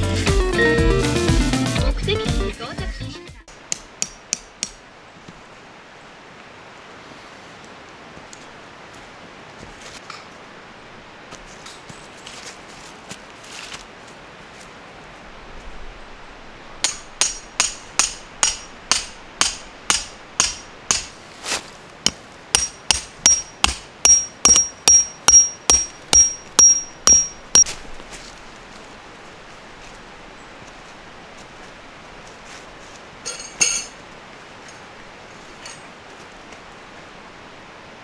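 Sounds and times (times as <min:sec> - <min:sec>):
hammer striking metal tent peg: 0:03.7 - 0:04.8, 0:16.8 - 0:21.2, 0:22.6 - 0:27.7, 0:33.3 - 0:34.0.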